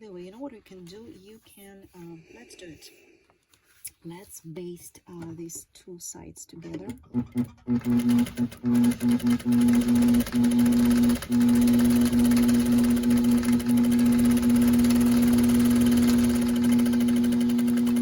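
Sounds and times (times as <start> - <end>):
sewing machine motor hum: 6.9 - 18.0.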